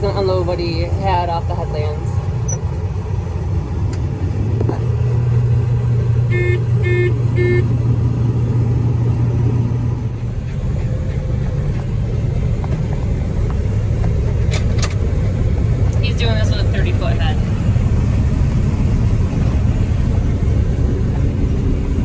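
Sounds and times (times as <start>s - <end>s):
combine harvester drone: 0.0s - 22.0s
short electronic beeps: 2.4s - 2.6s.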